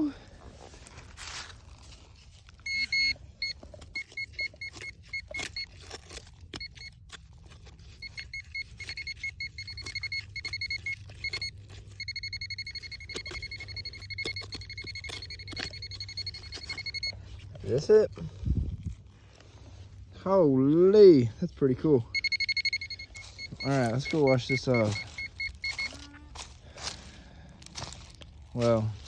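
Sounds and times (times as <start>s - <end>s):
digging in soil: 0.0s - 29.0s
metal detector beeping: 2.6s - 18.3s, 22.0s - 27.0s.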